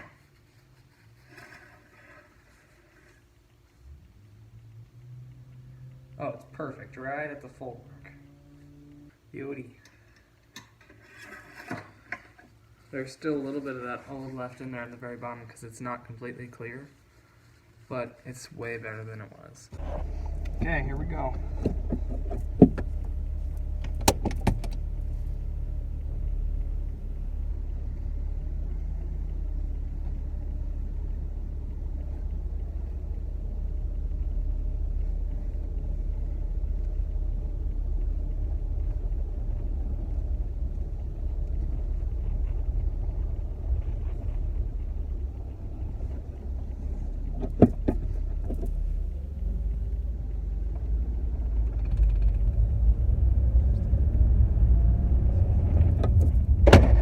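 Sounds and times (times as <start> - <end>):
car engine rumbling: 19.7 - 57.0.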